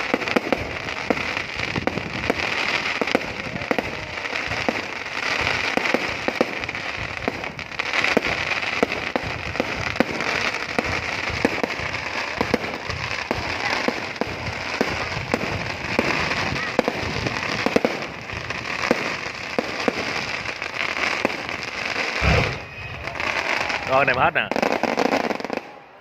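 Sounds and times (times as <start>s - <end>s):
fireworks crackling hiss: 0.0s - 25.8s
fireworks bangs: 0.0s - 26.0s.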